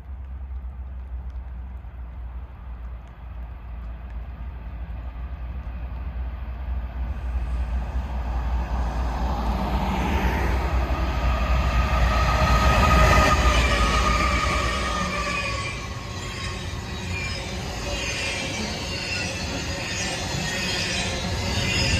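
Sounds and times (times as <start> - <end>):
diesel locomotive rumble: 0.0 - 21.9.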